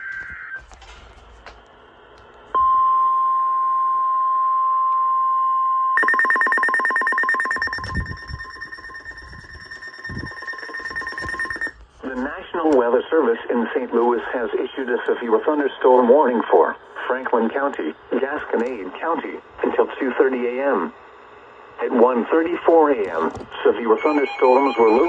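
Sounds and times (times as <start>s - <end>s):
warning alarm tone: 6.0s - 11.8s, 24.0s - 25.0s.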